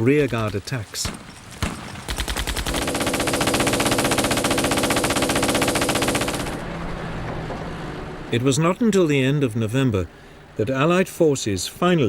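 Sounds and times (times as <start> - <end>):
rapid machine-gun fire: 1.6 - 6.6.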